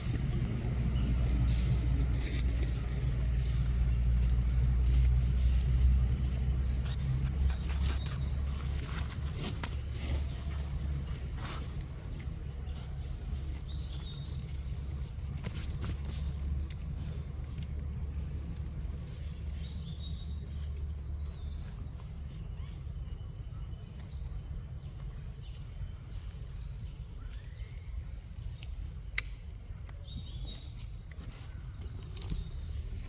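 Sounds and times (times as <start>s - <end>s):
steady low rumble: 0.0s - 33.0s
faint high chirps: 6.8s - 8.4s.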